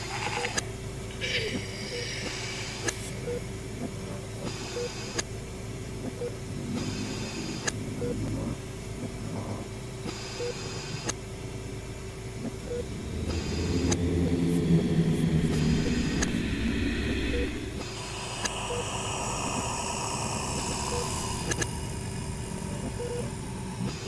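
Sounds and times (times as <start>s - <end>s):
steady low hum: 0.0s - 24.0s
hiss: 1.2s - 3.2s, 13.2s - 24.0s
low pitched drone: 12.2s - 24.0s
soft tone blips: 12.5s - 18.8s, 22.7s - 23.4s.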